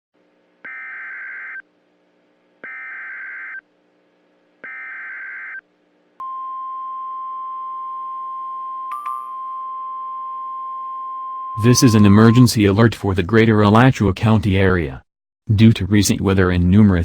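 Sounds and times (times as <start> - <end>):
steady high alert tone: 11.6 - 13.1.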